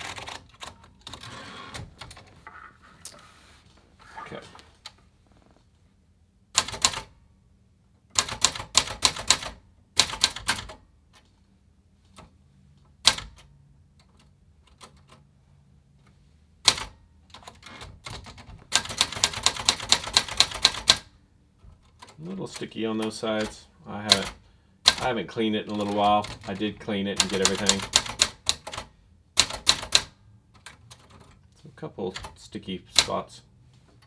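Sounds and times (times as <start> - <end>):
manual typewriter typing: 0.0 - 2.7, 6.6 - 7.1, 8.1 - 11.3, 13.0 - 15.3, 16.6 - 33.4.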